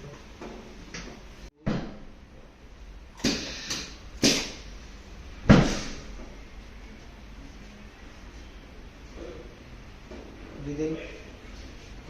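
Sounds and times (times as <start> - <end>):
heavy thump: 5.5 - 6.1.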